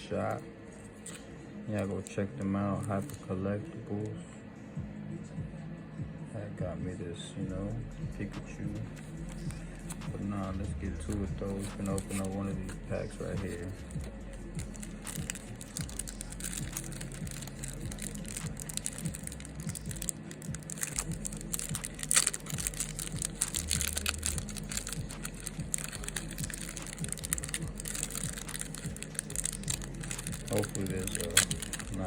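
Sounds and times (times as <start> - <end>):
foil wrapper tearing and crinkling: 11.0 - 12.4, 14.6 - 32.0.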